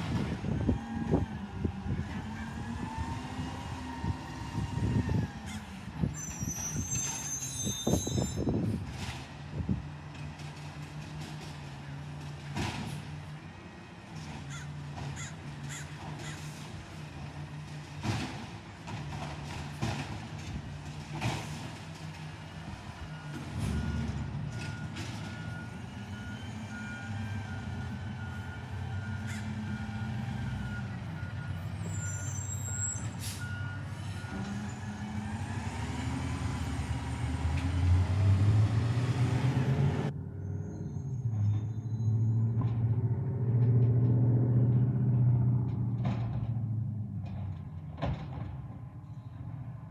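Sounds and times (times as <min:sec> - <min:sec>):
diesel truck engine running: 0:13.1 - 0:40.2
reversing beeper beeps: 0:23.0 - 0:34.8.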